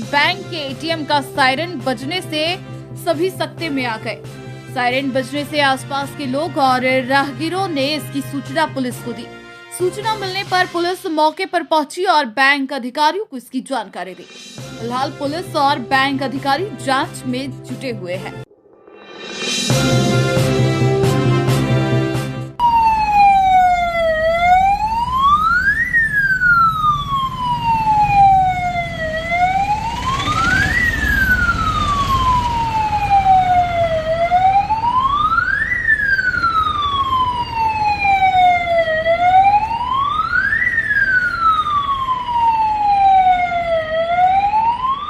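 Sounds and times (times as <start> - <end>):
alarm siren wailing: 22.6 - 45.0.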